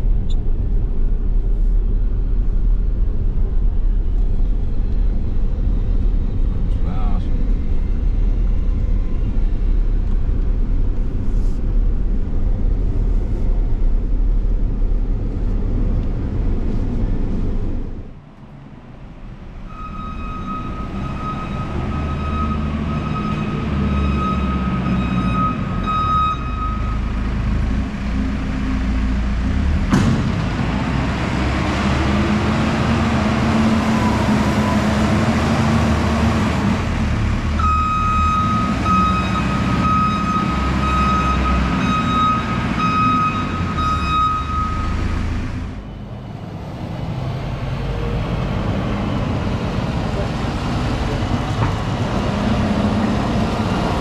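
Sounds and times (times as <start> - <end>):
heavy vehicle engine rumbling: 0.0 - 54.0
steady high-pitched tone: 19.4 - 27.1.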